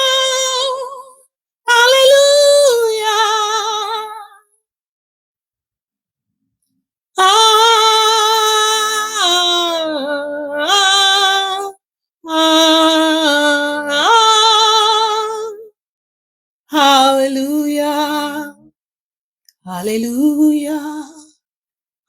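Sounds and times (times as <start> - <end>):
woman singing with vibrato: 0.0 - 4.4, 7.2 - 15.7, 16.7 - 18.7, 19.7 - 21.4.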